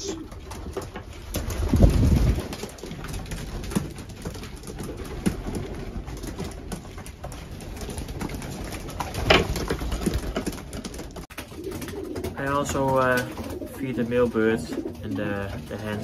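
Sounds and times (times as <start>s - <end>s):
pigeons cooing: 7.8s - 16.0s.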